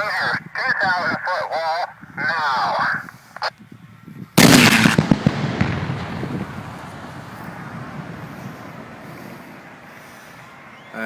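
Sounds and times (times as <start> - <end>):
sharp cracks: 4.4 - 9.0
pyrotechnic explosion: 4.4 - 9.6.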